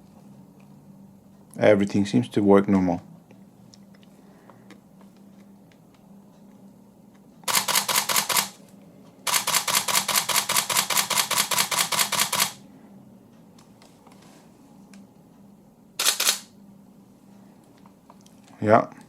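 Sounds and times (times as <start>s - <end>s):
camera shutter bursts: 7.4s - 8.6s, 9.3s - 12.6s, 16.0s - 16.5s.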